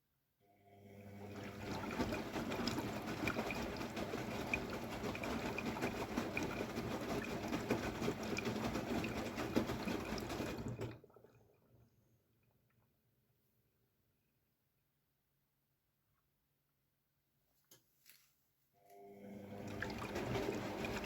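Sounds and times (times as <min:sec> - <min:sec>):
water rushing into washing machine: 0:00.8 - 0:12.2, 0:19.2 - 0:21.0.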